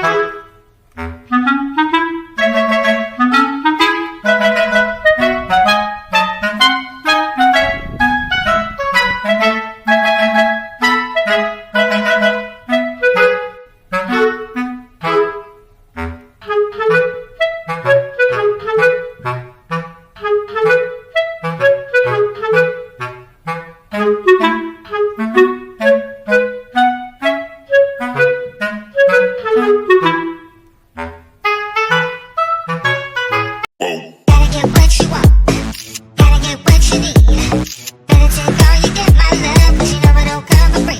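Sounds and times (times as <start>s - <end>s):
lively woodwind melody: 0.0s - 33.7s
soft low thumps: 7.5s - 9.5s, 36.2s - 40.8s.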